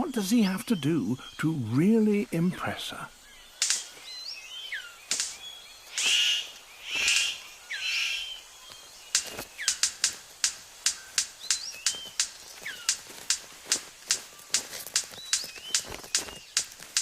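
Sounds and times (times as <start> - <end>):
bird rasping calls: 0.0 - 17.0
birds whistling gliding notes: 0.0 - 17.0
bird sharp clicks: 3.4 - 17.0.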